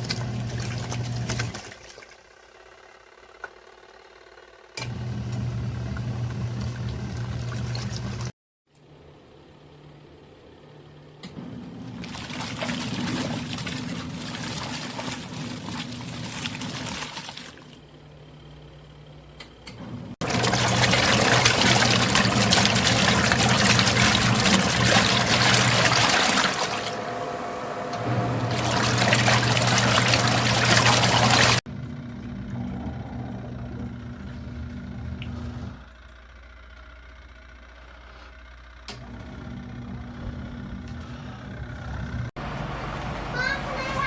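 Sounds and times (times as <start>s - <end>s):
washing machine motor hum: 0.0s - 2.0s, 4.8s - 8.3s, 9.0s - 44.0s
water rushing and splashing: 20.2s - 31.6s, 42.4s - 44.0s.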